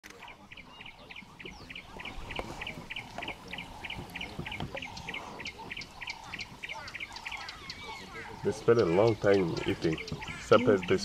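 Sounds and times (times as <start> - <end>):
other birds chirping: 0.0 - 11.0
low knocks and rustles: 1.4 - 6.6.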